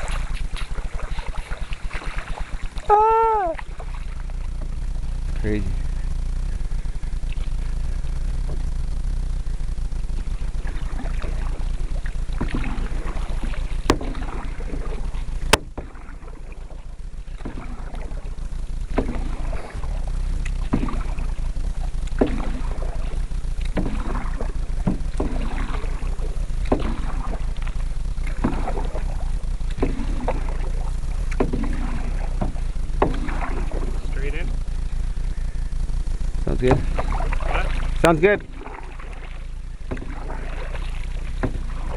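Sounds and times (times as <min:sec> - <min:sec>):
paddle strokes in water: 0:00.0 - 0:41.9
steady low rumble: 0:00.0 - 0:41.9
sharp knocks: 0:36.6 - 0:37.0.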